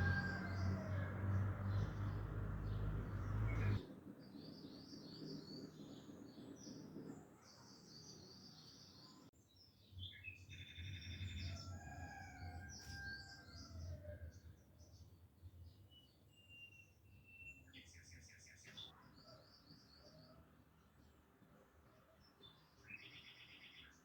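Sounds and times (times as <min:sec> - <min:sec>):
birds chirping and twittering: 0:00.0 - 0:21.2, 0:22.1 - 0:24.0.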